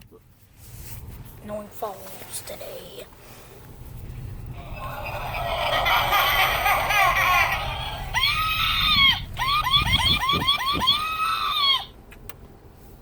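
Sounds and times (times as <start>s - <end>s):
din of shrill voices: 4.6s - 11.9s
siren wailing and yelping: 4.6s - 11.9s.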